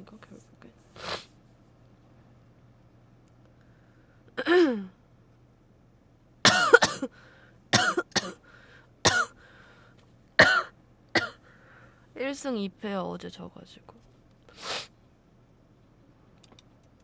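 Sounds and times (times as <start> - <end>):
steady low hum: 0.0 - 17.0
person coughing: 4.4 - 4.9, 6.5 - 7.1, 7.8 - 8.4, 9.1 - 9.4, 10.4 - 11.4.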